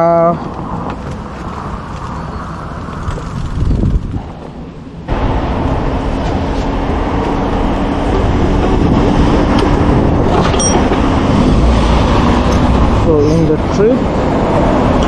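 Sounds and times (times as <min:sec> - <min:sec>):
road noise: 0:00.0 - 0:15.0
wind rushing over microphone: 0:00.0 - 0:15.0.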